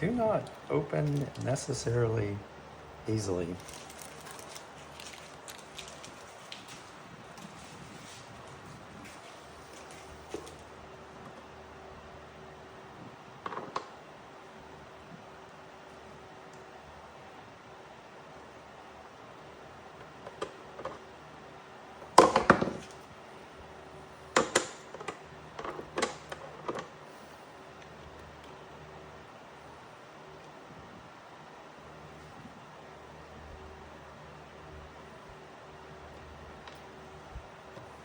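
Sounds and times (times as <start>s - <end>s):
faint steady hum: 0.0s - 38.0s
small hard parts clicking and clattering: 3.5s - 7.6s.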